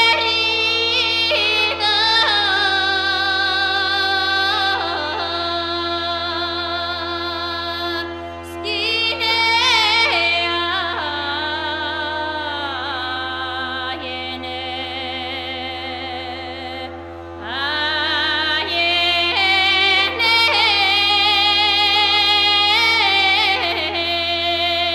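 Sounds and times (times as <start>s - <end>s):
held drone tone: 0.0s - 12.2s.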